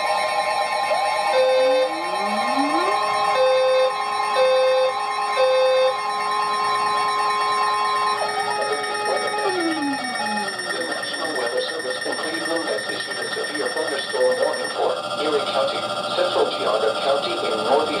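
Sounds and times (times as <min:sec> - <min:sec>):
piercing alarm tone: 0:00.0 - 0:18.0
short lower beeps: 0:01.4 - 0:06.0, 0:09.0 - 0:11.3.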